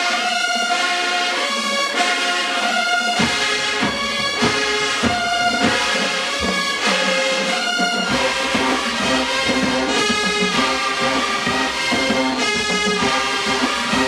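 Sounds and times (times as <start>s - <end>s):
brass section holding chords: 0.0s - 14.0s
drum hits: 3.2s - 7.0s.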